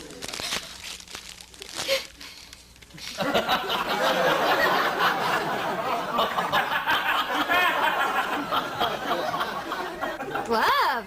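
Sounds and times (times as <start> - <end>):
studio audience laughing: 3.2 - 10.6.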